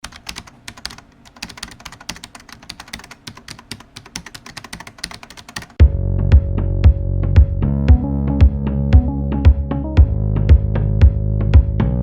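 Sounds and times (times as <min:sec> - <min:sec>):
computer keyboard typing: 0:00.0 - 0:05.8
electronic music with steady beat: 0:05.8 - 0:12.0.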